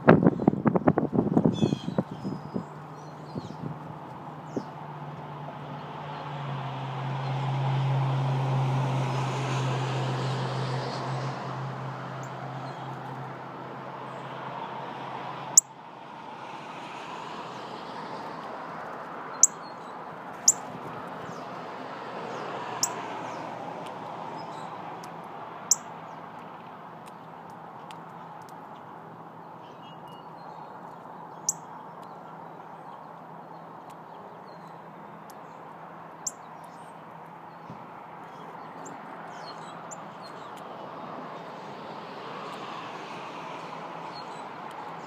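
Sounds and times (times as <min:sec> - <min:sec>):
small birds chirping: 0:01.4 - 0:03.7, 0:04.4 - 0:04.8, 0:19.3 - 0:21.5, 0:22.3 - 0:23.4, 0:27.0 - 0:40.8
passing vehicle: 0:02.7 - 0:19.4, 0:20.1 - 0:27.0, 0:37.8 - 0:45.0.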